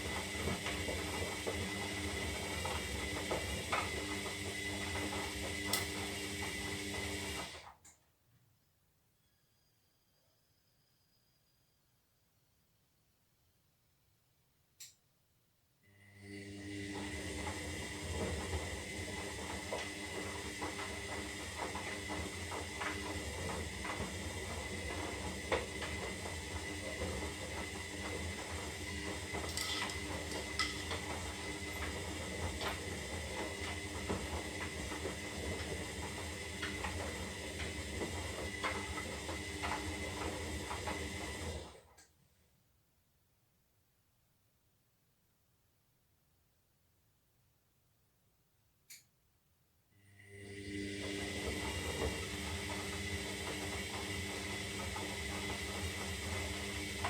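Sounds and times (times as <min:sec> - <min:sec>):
washing machine motor whine: 0:00.0 - 0:07.7, 0:16.0 - 0:41.9, 0:50.1 - 0:57.0
laundry and water sloshing: 0:21.0 - 0:40.1
items knocking against drum: 0:29.5 - 0:31.2.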